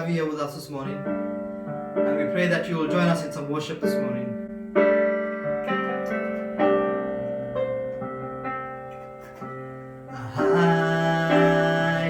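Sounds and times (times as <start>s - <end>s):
keyboard playing slow chords: 4.2s - 12.0s.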